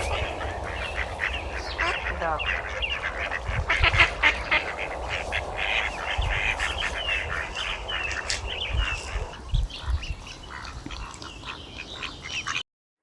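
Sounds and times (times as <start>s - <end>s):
birds calling: 0.0s - 12.6s.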